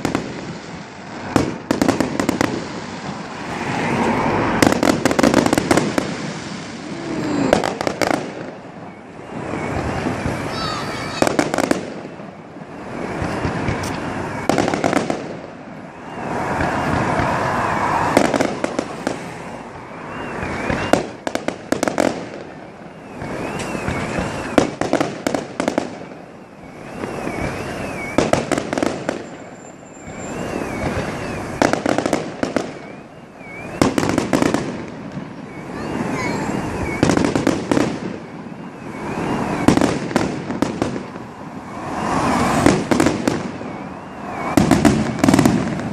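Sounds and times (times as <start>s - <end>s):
fireworks bangs and crackling: 0.0s - 45.9s
faint warbling whistle: 8.8s - 11.3s, 19.5s - 21.2s, 22.8s - 24.7s, 26.4s - 28.4s, 29.2s - 31.8s, 32.6s - 34.0s, 35.3s - 37.4s, 38.2s - 39.9s, 43.4s - 45.4s.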